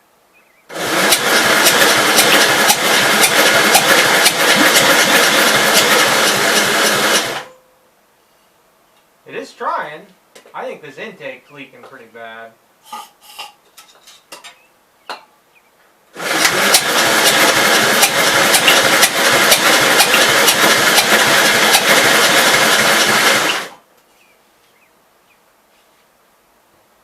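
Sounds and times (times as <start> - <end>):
engine cranking over: 0.7 - 7.6, 16.1 - 23.8.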